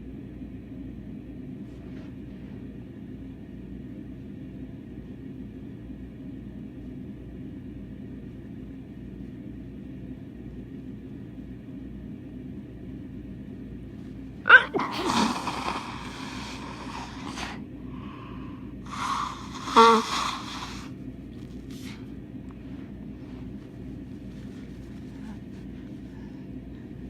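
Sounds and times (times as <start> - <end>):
person sneezing: 14.5 - 17.6, 18.9 - 20.9
breathy noise: 14.5 - 27.0.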